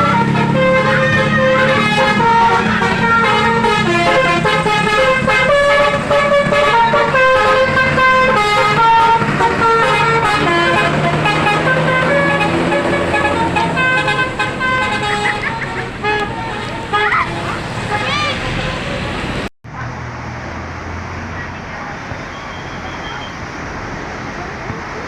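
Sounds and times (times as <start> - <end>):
bus musical horn tune: 0.0 - 19.1
bus engine hum: 0.0 - 25.0.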